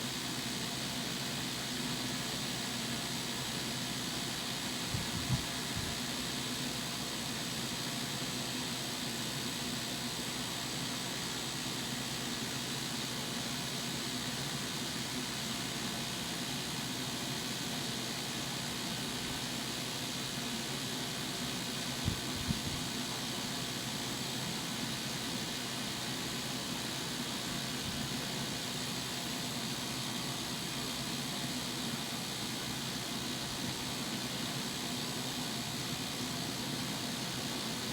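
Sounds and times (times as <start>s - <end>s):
fan display whirring: 21.9s - 23.0s.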